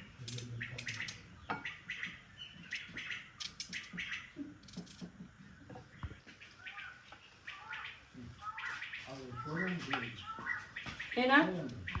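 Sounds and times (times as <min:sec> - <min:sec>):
birds chirping: 0:00.0 - 0:12.0
sharp clicks: 0:00.2 - 0:01.2, 0:02.7 - 0:03.9.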